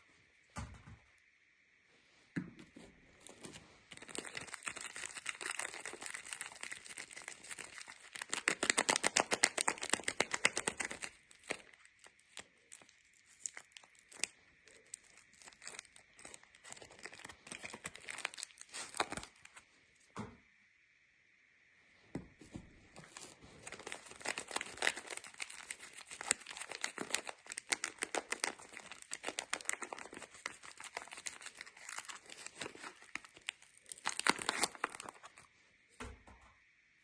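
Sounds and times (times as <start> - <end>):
packaging crinkling and tearing: 3.2 - 19.6, 23.0 - 35.5.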